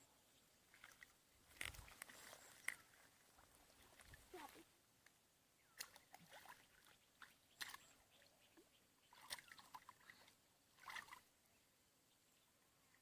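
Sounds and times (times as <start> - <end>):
faint water splashes: 0.6 - 4.8, 5.6 - 11.5.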